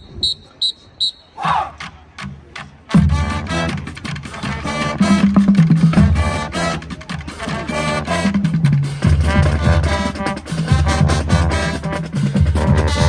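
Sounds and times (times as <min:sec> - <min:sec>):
drums keeping a steady beat: 0:00.0 - 0:13.0
brass chords: 0:02.9 - 0:13.0
low brass bass line: 0:02.9 - 0:13.0.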